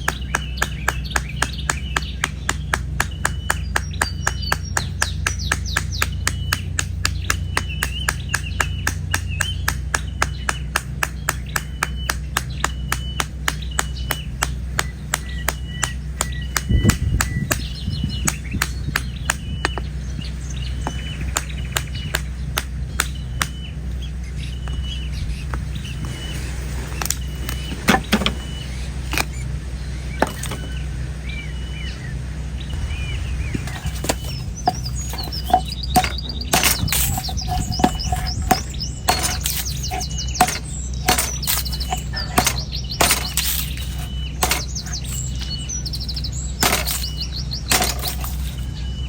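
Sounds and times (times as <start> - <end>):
knife chopping coconut husk: 0.0 - 23.7, 30.2 - 30.7, 33.6 - 48.7
bird chirping: 0.0 - 49.0.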